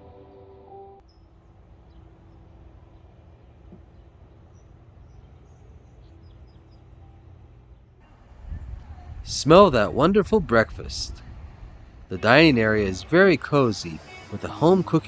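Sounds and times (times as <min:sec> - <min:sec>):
background music: 0:00.0 - 0:01.0, 0:12.1 - 0:15.0
low rumble: 0:08.1 - 0:13.4.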